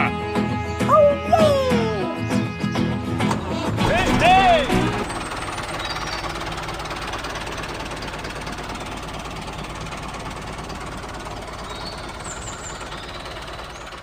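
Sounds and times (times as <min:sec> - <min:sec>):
small tractor engine rattling: 0:02.2 - 0:14.0.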